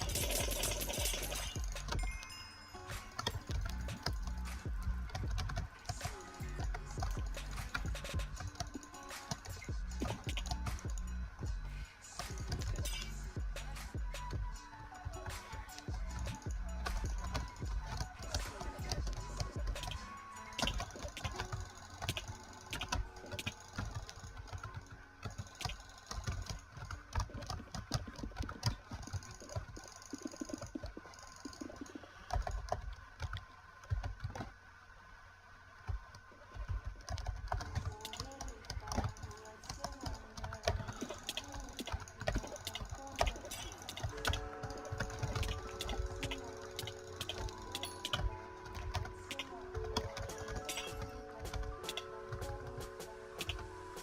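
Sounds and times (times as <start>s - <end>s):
computer mouse buttons clicking: 15.2s - 34.5s, 35.9s - 53.7s.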